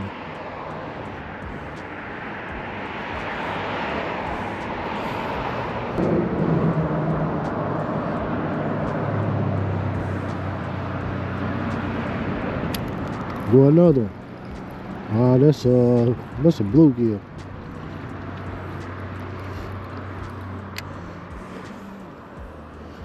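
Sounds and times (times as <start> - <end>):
passing motor engine: 0.0 - 23.0
low hum: 5.4 - 13.5, 16.6 - 23.0.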